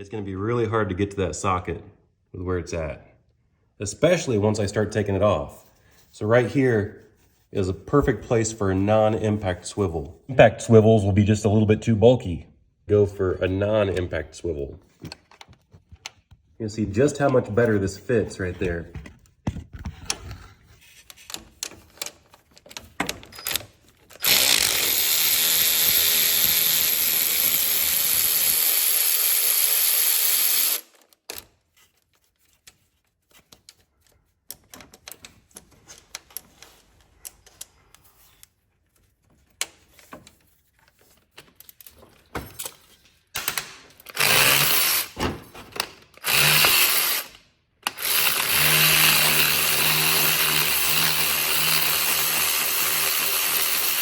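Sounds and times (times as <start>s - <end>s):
cordless power tool spinning: 23.4s - 31.0s, 44.0s - 45.2s, 46.1s - 54.0s
tools clicking and tapping: 41.0s - 44.8s.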